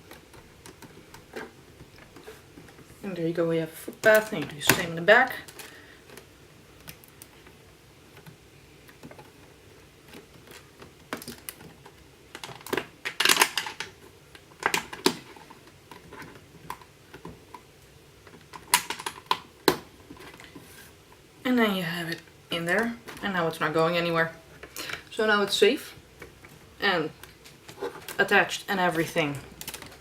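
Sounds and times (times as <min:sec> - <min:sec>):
plastic bricks clicking: 0:10.0 - 0:17.7.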